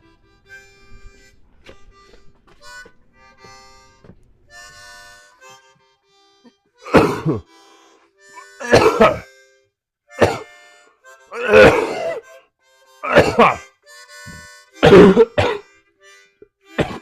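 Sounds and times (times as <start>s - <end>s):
music of short held notes: 0.0s - 6.8s, 13.6s - 14.8s
loud coughs: 6.8s - 7.4s, 8.6s - 9.3s, 10.2s - 10.5s, 11.4s - 12.3s, 13.0s - 13.6s, 14.8s - 15.7s, 16.8s - 17.0s.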